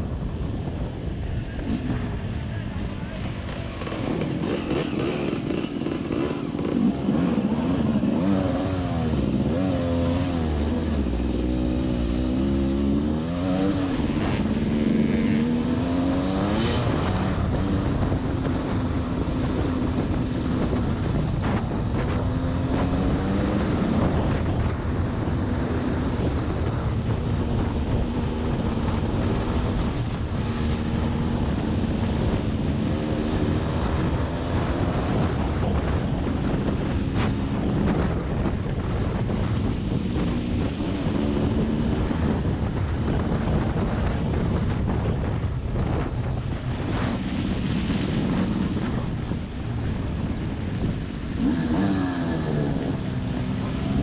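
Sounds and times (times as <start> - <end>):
off-road vehicle engine revving: 3.5 - 24.7, 50.8 - 54.0.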